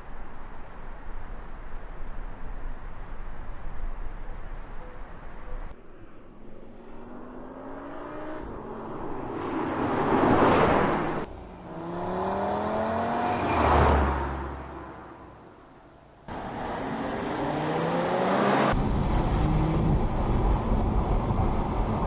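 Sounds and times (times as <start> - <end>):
car engine accelerating hard: 9.8 - 22.0.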